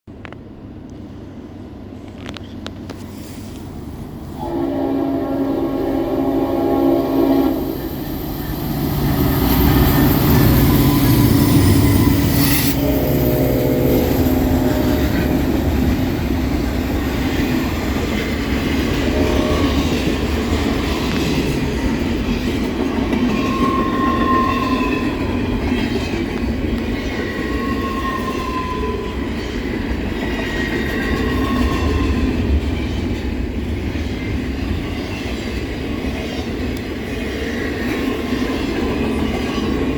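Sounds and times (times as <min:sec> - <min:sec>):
diesel locomotive rumble: 0:00.1 - 0:23.7
train cars rolling: 0:00.1 - 0:39.9
locomotive air horn: 0:04.4 - 0:08.0, 0:10.9 - 0:16.3, 0:18.8 - 0:20.1
wheel squeals: 0:08.0 - 0:15.9.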